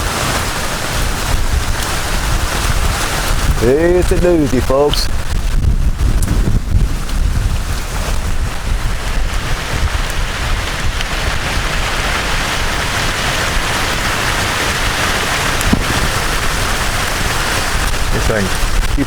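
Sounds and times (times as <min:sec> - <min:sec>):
heavy rain pouring: 0:00.0 - 0:19.0
wind buffeting microphone: 0:00.0 - 0:19.0.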